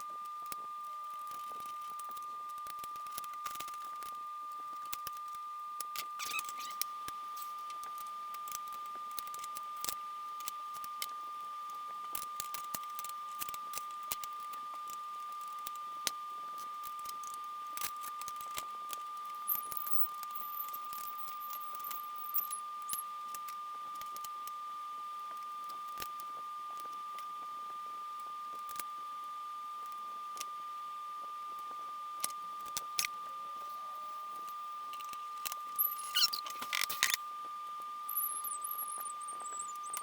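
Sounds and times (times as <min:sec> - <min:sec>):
steady high-pitched tone: 0:19.4 - 0:23.0, 0:35.7 - 0:37.2, 0:38.0 - 0:40.0.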